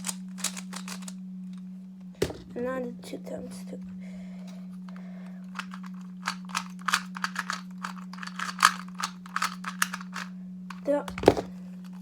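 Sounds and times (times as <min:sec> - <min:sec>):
puzzle cube plastic clicking: 0:00.0 - 0:01.1, 0:04.9 - 0:11.2
steady low hum: 0:00.0 - 0:12.0.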